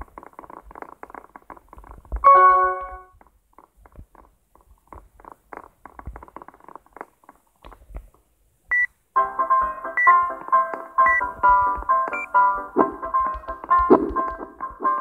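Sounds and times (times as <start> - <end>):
keyboard music: 2.3 - 3.1, 9.2 - 15.0.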